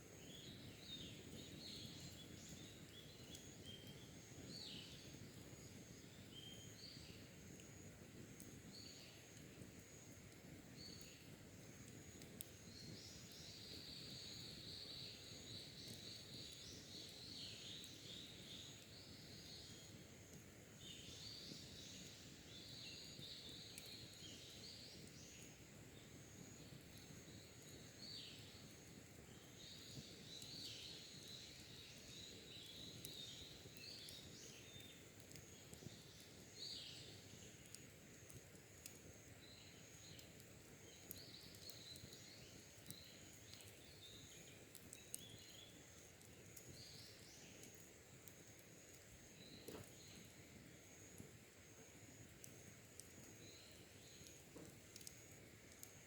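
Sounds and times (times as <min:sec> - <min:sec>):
low steady hiss: 0:00.0 - 0:56.0
wild birds singing: 0:20.8 - 0:25.6, 0:26.3 - 0:37.8, 0:38.8 - 0:47.8, 0:52.5 - 0:56.0.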